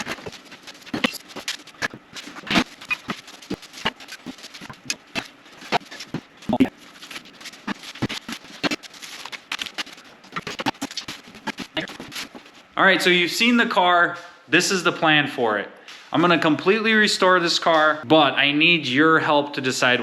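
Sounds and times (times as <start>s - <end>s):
small objects clicking and scraping: 0.0s - 12.7s.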